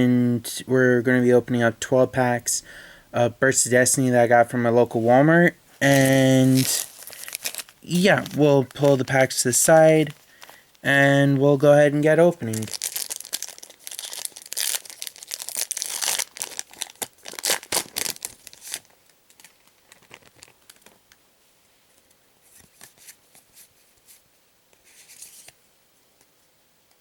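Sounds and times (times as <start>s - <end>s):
foil wrapper crinkling and tearing: 5.8s - 10.8s, 12.4s - 21.1s.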